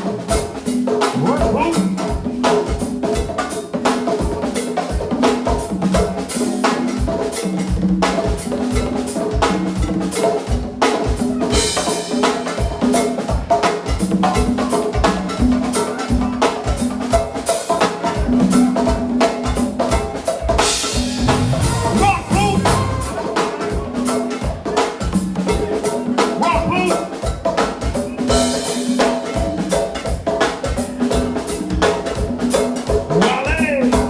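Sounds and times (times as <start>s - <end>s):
drum kit groove: 0.0s - 34.0s
bass and keyboard notes: 20.6s - 23.5s.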